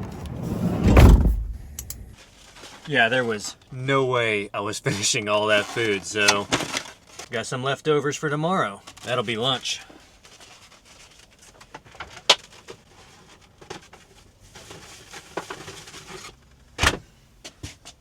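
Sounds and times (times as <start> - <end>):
loud knock: 0.4 - 2.0
sharp click: 1.4 - 2.1.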